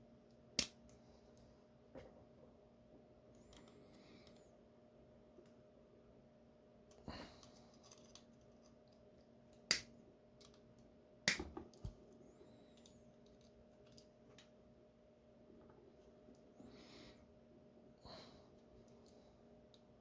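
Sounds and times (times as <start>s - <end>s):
metal tool prying clip snaps: 11.3s - 11.5s.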